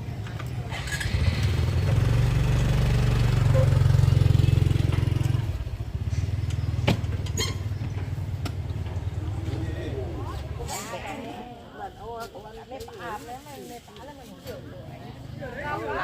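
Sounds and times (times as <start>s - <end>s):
small engine running: 0.7s - 6.8s.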